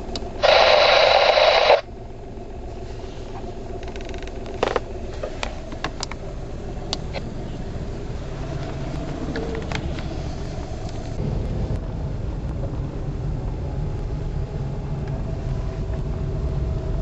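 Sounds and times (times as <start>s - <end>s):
radio static hiss: 0.3s - 1.9s
low rumble: 1.2s - 17.0s.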